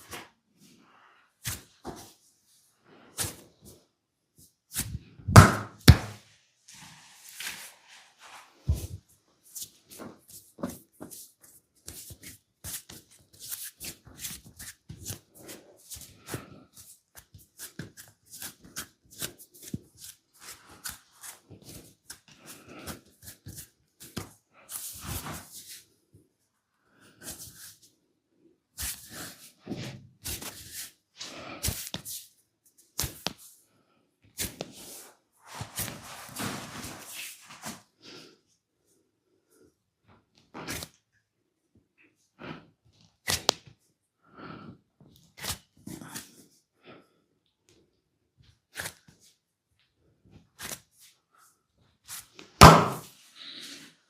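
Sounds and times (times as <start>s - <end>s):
hands brushing rubs on skin: 6.7s - 8.8s
hands slapping and patting skin: 33.0s - 33.5s, 52.1s - 53.1s.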